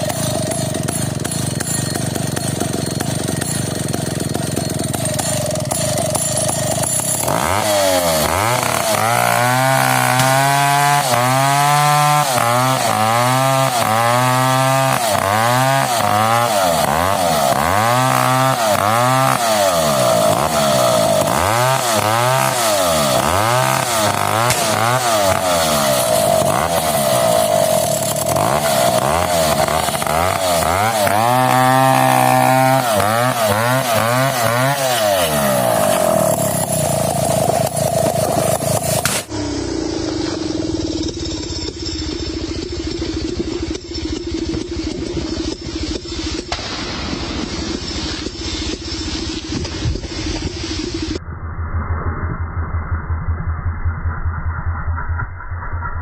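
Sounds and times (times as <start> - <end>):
chainsaw revving: 0.0 - 51.2.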